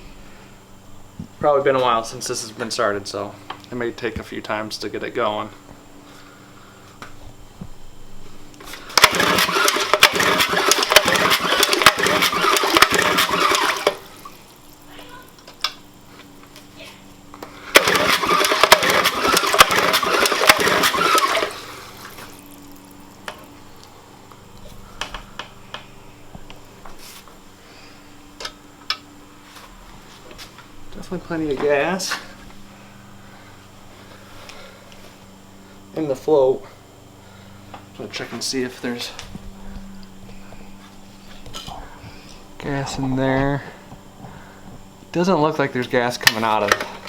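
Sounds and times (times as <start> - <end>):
outboard motor cranking clatter: 8.7 - 14.8, 17.7 - 23.4.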